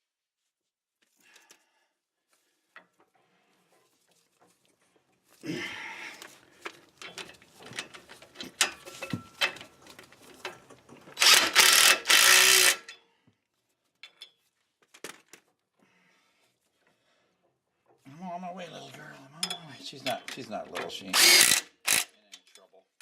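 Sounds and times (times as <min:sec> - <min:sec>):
tools rattling: 0:06.2 - 0:13.0, 0:19.0 - 0:22.7
power ratchet spinning: 0:11.2 - 0:12.9, 0:21.1 - 0:22.1.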